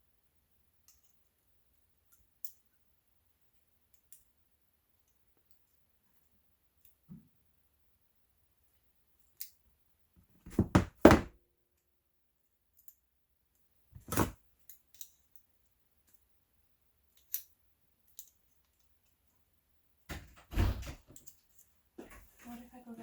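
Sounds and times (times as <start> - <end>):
tools knocking: 10.5 - 11.3.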